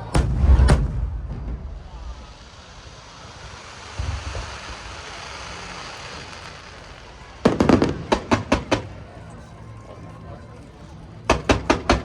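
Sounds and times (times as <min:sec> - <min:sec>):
dull firework boom: 0:00.0 - 0:05.8
sharp firework bangs: 0:00.0 - 0:09.0
crackle of bursting fireworks: 0:00.0 - 0:09.6, 0:11.1 - 0:12.0.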